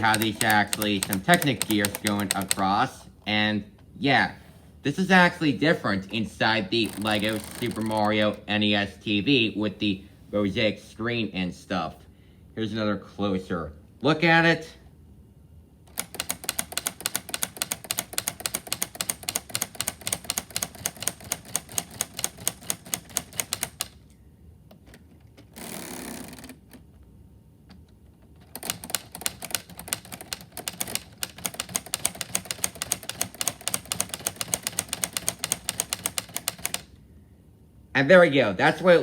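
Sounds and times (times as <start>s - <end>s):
plastic typewriter keys clacking: 0.0s - 2.8s, 6.8s - 8.4s, 15.9s - 24.0s, 28.4s - 36.9s.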